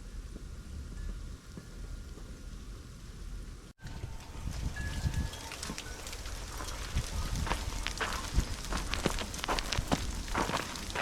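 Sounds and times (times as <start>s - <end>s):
wind rumbling on microphone: 0.0s - 11.0s
snow ticking on camera: 4.5s - 11.0s.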